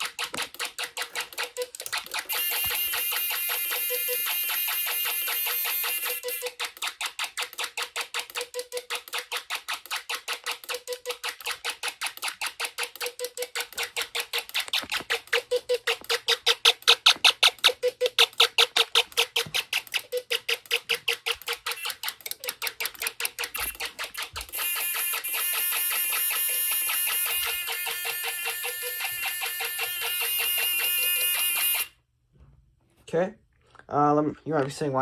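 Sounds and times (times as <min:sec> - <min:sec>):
pulsing alarm buzzer: 0:02.2 - 0:06.6, 0:24.5 - 0:32.0.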